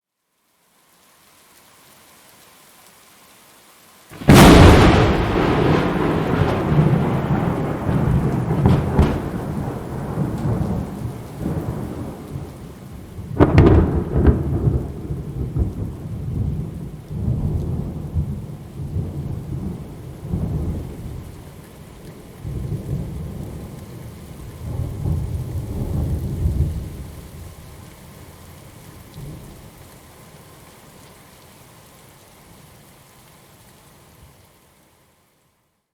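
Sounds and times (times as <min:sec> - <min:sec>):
thunder rumbling: 0:04.1 - 0:21.4, 0:22.3 - 0:27.7
sharp thunder crack: 0:04.2 - 0:12.5, 0:13.3 - 0:16.6.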